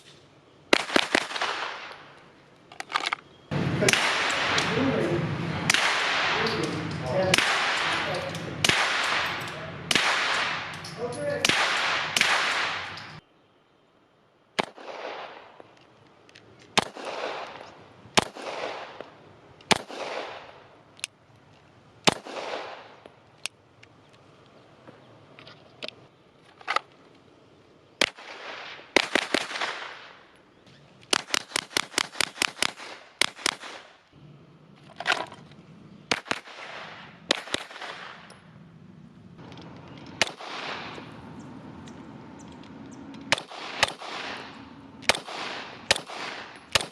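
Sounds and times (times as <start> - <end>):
pistol shots: 0.7 - 2.1, 3.8 - 5.0, 5.6 - 13.2, 14.6 - 15.6, 16.8 - 19.1, 19.7 - 20.6, 22.0 - 23.1, 28.0 - 30.2, 31.1 - 34.0, 36.1 - 38.3, 40.0 - 41.3, 43.0 - 46.9.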